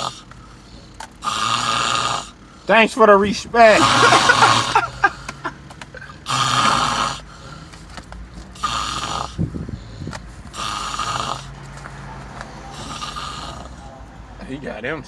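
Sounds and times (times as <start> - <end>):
person snoring: 0.0 - 0.3, 1.2 - 2.4, 3.1 - 7.6, 8.6 - 9.4, 10.5 - 11.5, 12.6 - 14.0.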